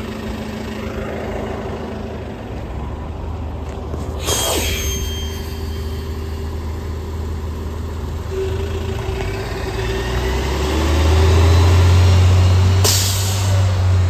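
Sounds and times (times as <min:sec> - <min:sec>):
bus engine drone: 0:00.0 - 0:14.0
faint rising whine: 0:04.0 - 0:09.8.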